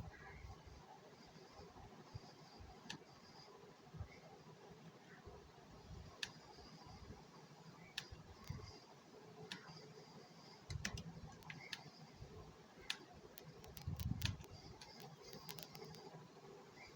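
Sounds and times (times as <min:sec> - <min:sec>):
mechanical keyboard keys clicking: 0:10.7 - 0:11.9, 0:12.9 - 0:16.0.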